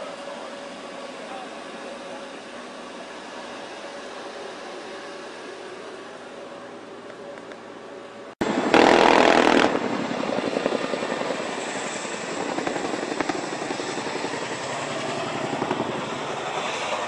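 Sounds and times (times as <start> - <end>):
helicopter rotor beating: 8.4 - 17.0
loud rush of wind: 8.4 - 17.0.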